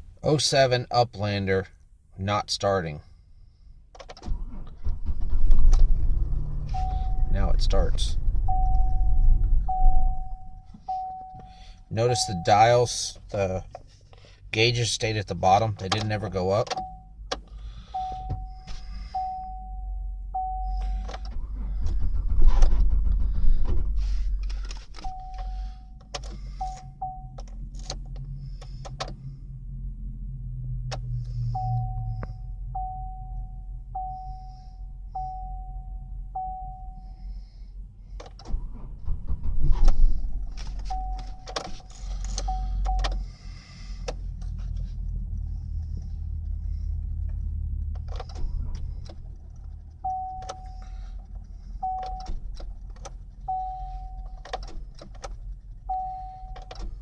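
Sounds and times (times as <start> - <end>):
low rumble from van: 3.0 - 57.0
dashboard warning chime beeping: 6.7 - 13.2, 15.8 - 17.2, 17.9 - 21.4, 24.9 - 27.7, 31.4 - 37.2, 40.8 - 43.3, 49.9 - 51.1, 51.8 - 52.4, 53.0 - 54.6, 55.8 - 56.9.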